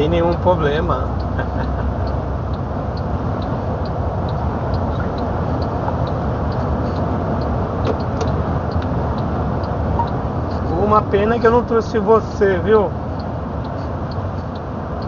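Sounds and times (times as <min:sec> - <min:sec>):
truck rumble inside cab: 0:00.0 - 0:15.0
faint light ticking: 0:12.8 - 0:15.0.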